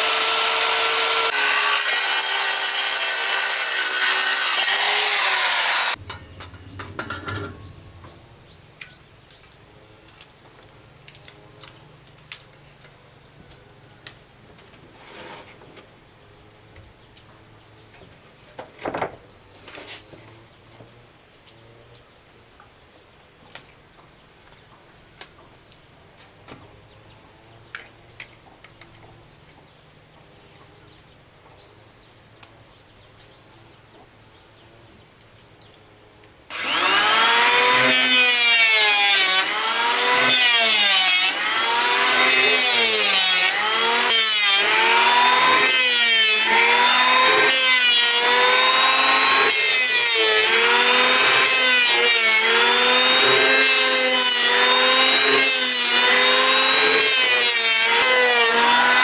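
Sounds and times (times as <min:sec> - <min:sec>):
power tool running: 0:00.0 - 0:08.6, 0:36.5 - 0:59.0.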